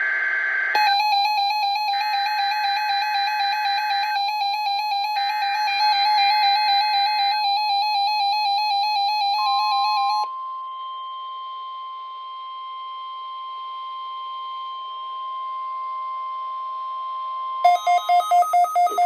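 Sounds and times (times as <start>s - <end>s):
steady single-pitch alarm tone: 0.0s - 19.0s
warbling electronic alert tone: 18.4s - 19.0s.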